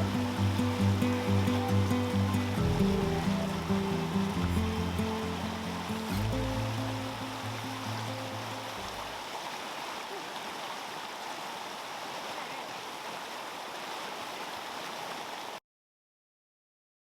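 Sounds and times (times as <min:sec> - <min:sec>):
rushing water: 0:00.0 - 0:15.6.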